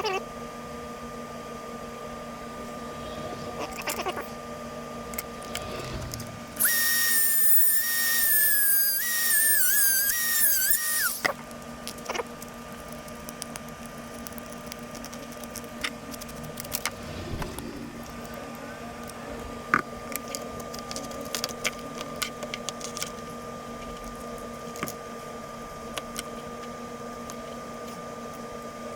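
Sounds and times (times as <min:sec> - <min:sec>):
small electric motor whining: 0:05.4 - 0:11.4.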